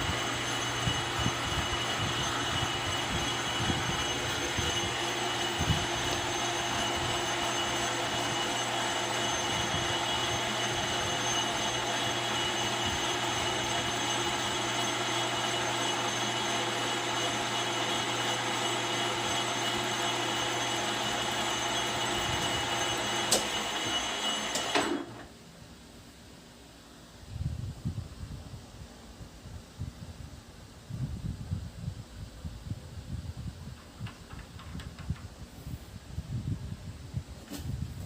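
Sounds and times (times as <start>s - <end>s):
metal lathe humming: 0.0s - 25.0s.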